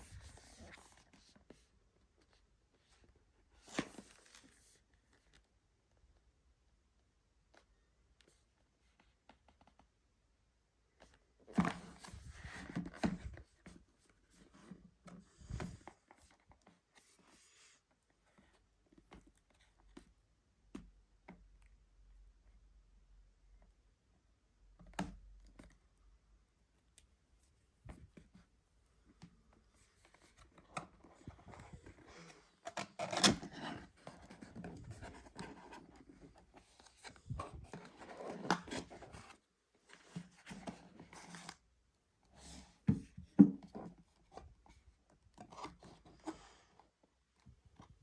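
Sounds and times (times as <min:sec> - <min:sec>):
packaging rustling and scraping: 0:11.5 - 0:13.7, 0:29.8 - 0:41.6.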